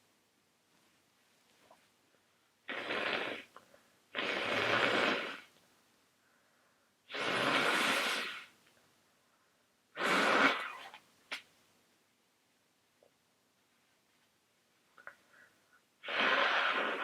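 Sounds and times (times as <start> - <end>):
congested nose breathing: 7.1 - 8.6, 15.0 - 17.0.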